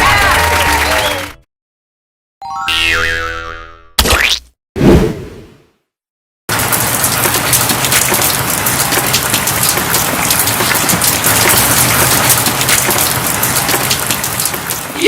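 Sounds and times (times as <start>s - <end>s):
heavy rain pattering: 6.5s - 15.0s
rain crackles: 6.5s - 15.0s.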